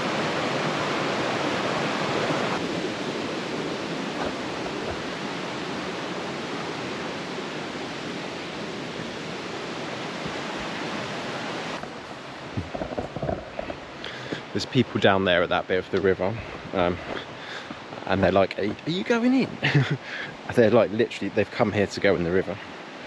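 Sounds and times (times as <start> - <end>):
river rushing over rocks: 0.0 - 23.0.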